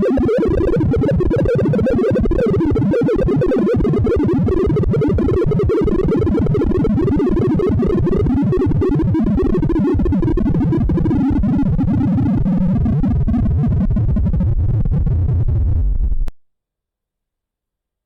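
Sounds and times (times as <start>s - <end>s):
synthesized beep tones: 0.0s - 10.6s.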